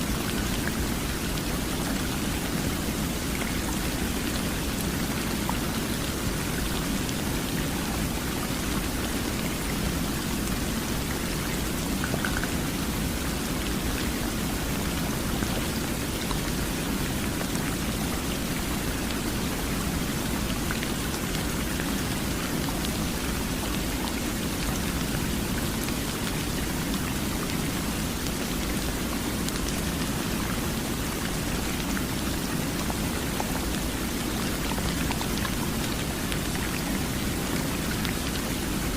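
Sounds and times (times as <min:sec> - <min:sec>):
steady rain hiss: 0:00.0 - 0:38.9.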